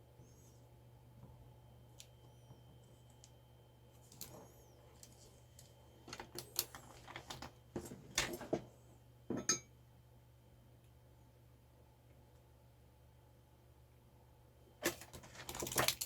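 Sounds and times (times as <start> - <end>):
small tools clicking and clinking: 14.8 - 16.0.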